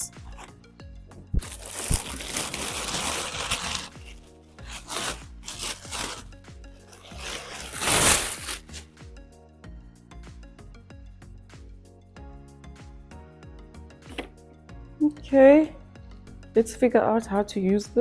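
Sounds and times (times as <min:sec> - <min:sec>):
quiet background music: 0:00.0 - 0:18.0
packaging rustling: 0:01.4 - 0:06.3, 0:06.9 - 0:08.9.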